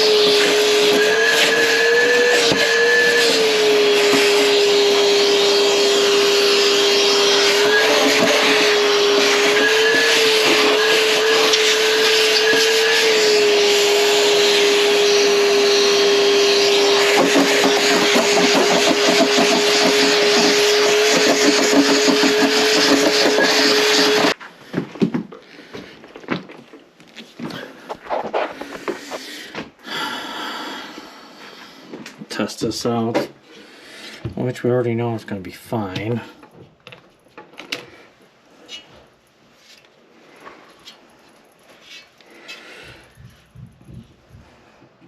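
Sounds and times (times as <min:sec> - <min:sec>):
vacuum cleaner running: 0:00.0 - 0:24.4.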